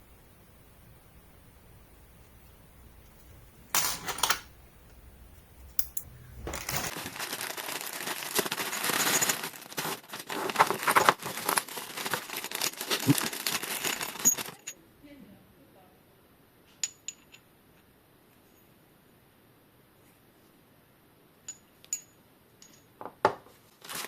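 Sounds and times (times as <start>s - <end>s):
packaging crinkling and tearing: 6.9s - 14.6s, 23.8s - 24.0s.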